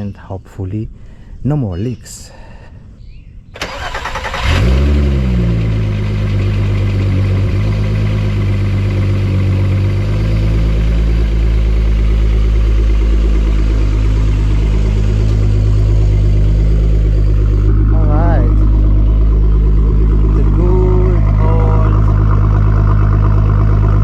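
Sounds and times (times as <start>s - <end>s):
car engine starting and idling: 3.6s - 24.0s.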